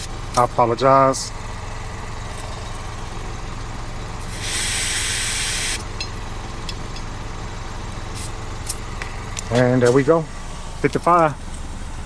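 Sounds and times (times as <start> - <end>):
motor droning: 1.3 - 7.8
compressed air hissing: 4.2 - 6.0, 8.1 - 8.8.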